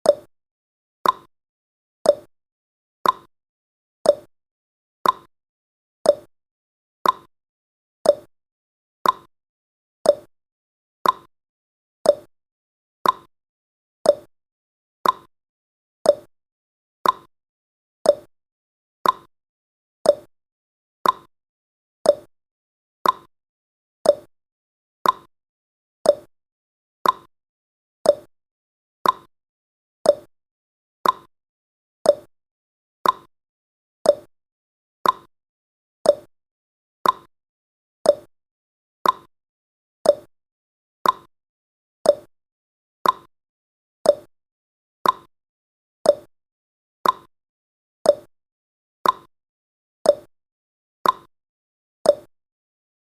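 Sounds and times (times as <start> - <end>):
timer ticking: 0.0 - 0.3, 1.0 - 1.3, 2.1 - 2.3, 3.0 - 3.3, 4.1 - 4.3, 5.0 - 5.3, 6.1 - 6.3, 7.0 - 7.3, 8.1 - 8.3, 9.0 - 9.3, 10.1 - 10.3, 11.0 - 11.3, 12.1 - 12.3, 13.0 - 13.3, 14.1 - 14.3, 15.0 - 15.3, 16.1 - 16.3, 17.0 - 17.3, 18.0 - 18.3, 19.0 - 19.3, 20.1 - 20.3, 21.0 - 21.3, 22.0 - 22.3, 23.0 - 23.3, 24.0 - 24.3, 25.0 - 25.3, 26.0 - 26.3, 27.0 - 27.3, 28.0 - 28.3, 29.0 - 29.3, 30.0 - 30.3, 31.0 - 31.3, 32.1 - 32.3, 33.0 - 33.3, 34.0 - 34.3, 35.0 - 35.3, 36.0 - 36.3, 37.0 - 37.3, 38.0 - 38.3, 39.0 - 39.3, 40.0 - 40.3, 41.0 - 41.3, 42.0 - 42.3, 43.0 - 43.3, 44.1 - 44.3, 45.0 - 45.3, 46.1 - 46.3, 47.0 - 47.3, 48.1 - 48.3, 49.0 - 49.3, 50.1 - 50.3, 51.0 - 51.3, 52.1 - 52.3.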